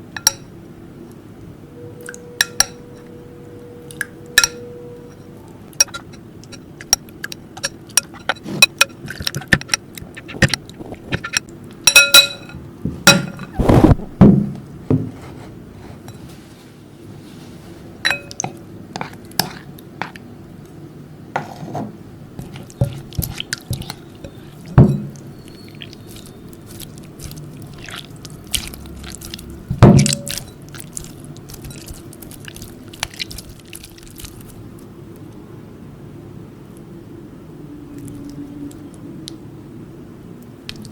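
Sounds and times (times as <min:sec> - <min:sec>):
utensil clinking against bowl: 0:10.4 - 0:13.5, 0:18.0 - 0:19.7, 0:22.4 - 0:33.6.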